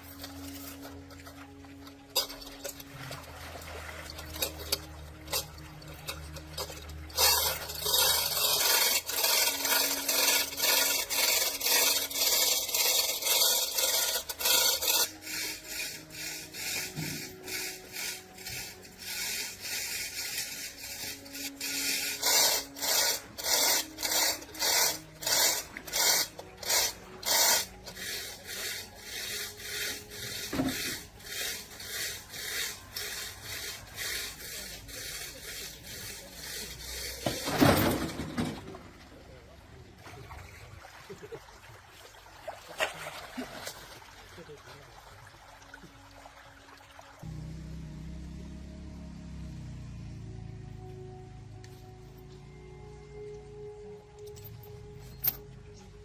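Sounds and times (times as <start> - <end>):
rasping hand abrasion strokes: 0.0 - 2.9, 4.1 - 37.8.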